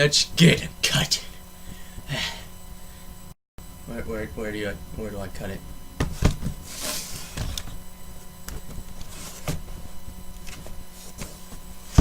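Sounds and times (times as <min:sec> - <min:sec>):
cardboard box knocks and thumps: 0:06.0 - 0:06.6
cardboard scraping rustles: 0:06.1 - 0:07.8, 0:08.6 - 0:12.0.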